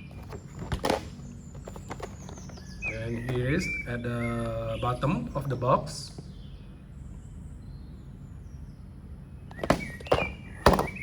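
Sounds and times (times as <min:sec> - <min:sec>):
box being handled clicks and knocks: 0:00.0 - 0:03.4, 0:09.5 - 0:11.0
steady low hum: 0:00.0 - 0:11.0.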